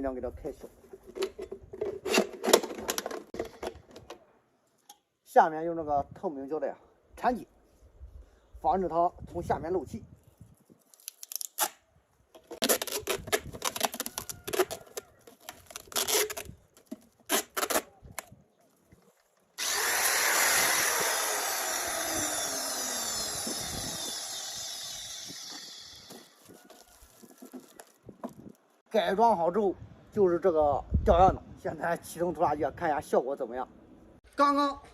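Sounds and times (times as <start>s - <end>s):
tape crackling and ripping: 10.6s - 18.4s, 19.0s - 28.6s
tape screeching off roll: 12.5s - 16.5s, 17.2s - 17.9s, 19.6s - 28.0s.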